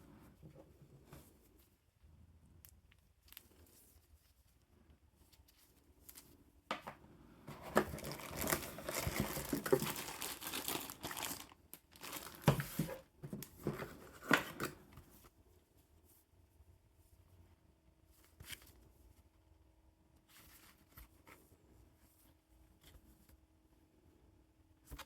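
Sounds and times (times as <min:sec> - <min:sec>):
packaging crinkling and tearing: 0:07.6 - 0:13.0.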